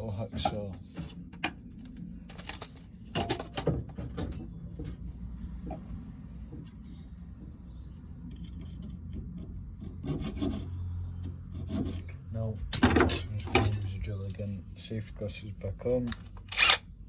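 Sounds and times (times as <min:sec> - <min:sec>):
low steady hum: 0:00.0 - 0:17.0
metal tools knocking and clicking: 0:12.8 - 0:14.0.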